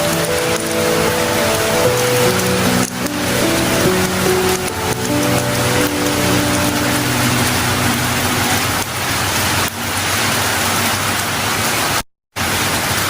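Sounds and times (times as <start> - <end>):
heavy rain on an umbrella: 0.0 - 13.0.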